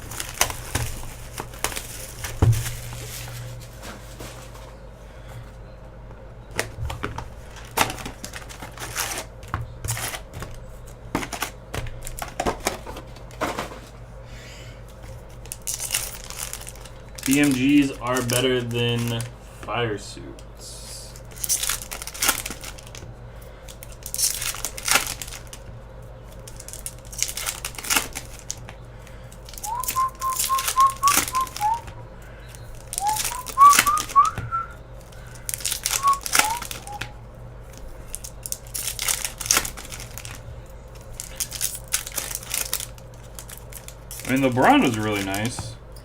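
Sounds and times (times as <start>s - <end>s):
foil wrappers tearing and crinkling: 0.0s - 4.8s, 6.6s - 13.8s, 15.0s - 19.3s, 21.1s - 45.6s
person whistling: 29.6s - 31.9s, 33.0s - 34.8s, 36.0s - 37.2s.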